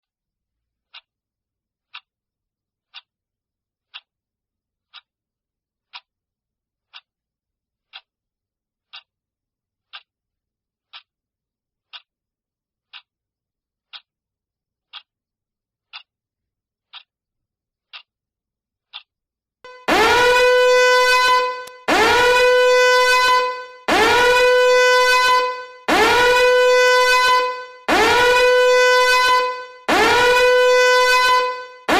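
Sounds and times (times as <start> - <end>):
clock ticking: 15.9 - 16.1, 16.9 - 17.1, 19.7 - 31.9.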